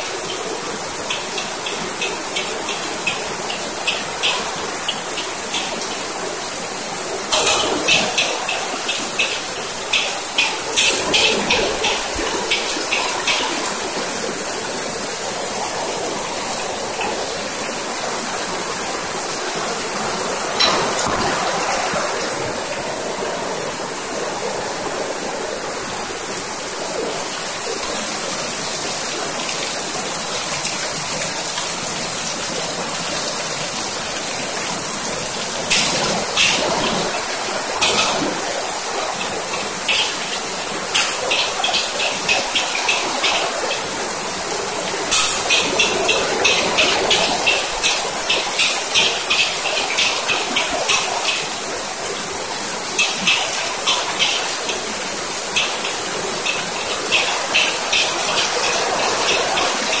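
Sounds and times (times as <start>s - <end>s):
metal spatula clanking on wok: 7.3s - 10.0s.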